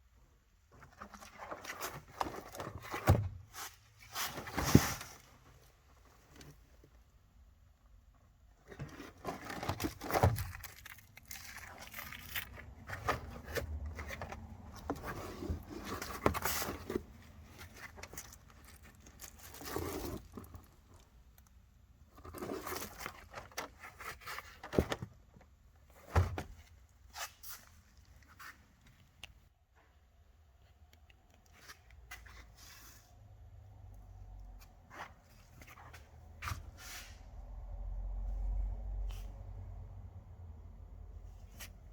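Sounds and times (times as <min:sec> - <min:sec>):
rustling and scraping of car parts: 0:00.0 - 0:40.1, 0:41.0 - 0:41.9.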